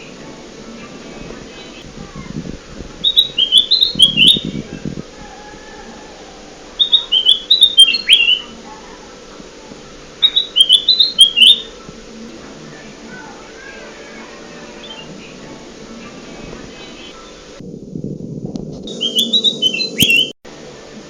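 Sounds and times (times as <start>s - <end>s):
bird singing chirpy notes: 3.0s - 17.6s, 18.9s - 20.4s.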